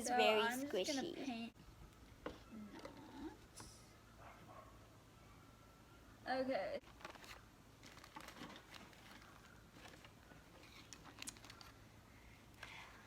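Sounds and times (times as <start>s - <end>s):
craft supplies clicking and rustling: 6.8s - 11.8s.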